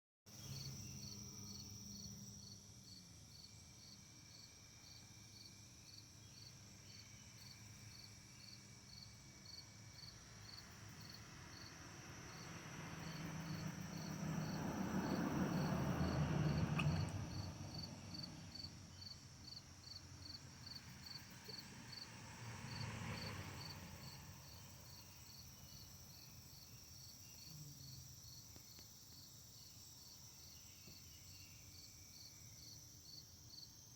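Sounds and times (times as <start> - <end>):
crickets chirping: 0.3 - 33.9.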